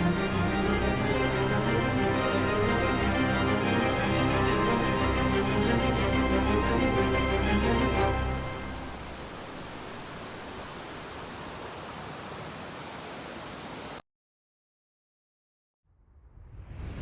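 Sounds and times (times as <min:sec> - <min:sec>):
hiss-like rushing noise: 0:08.4 - 0:14.0.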